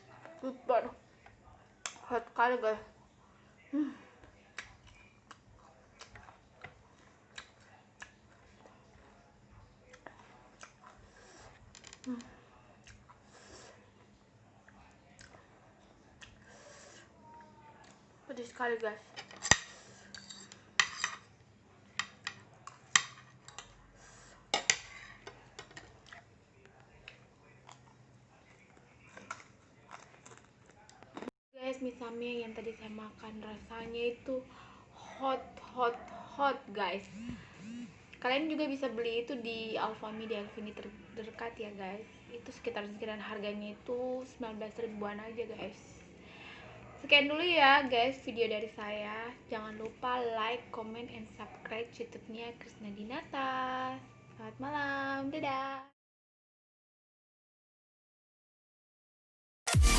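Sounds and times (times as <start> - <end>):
person chewing: 9.9 - 11.0, 29.0 - 31.3
cutlery clinking against a plate: 19.1 - 21.3, 22.0 - 23.8, 24.5 - 25.9
low voice hum: 37.1 - 38.0.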